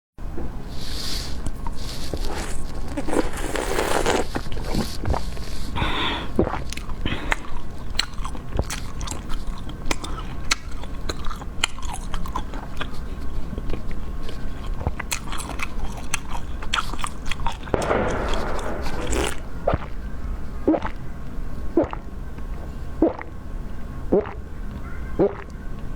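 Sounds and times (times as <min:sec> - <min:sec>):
low steady hum: 0:00.2 - 0:25.9
crunchy biting and chewing: 0:00.7 - 0:20.0.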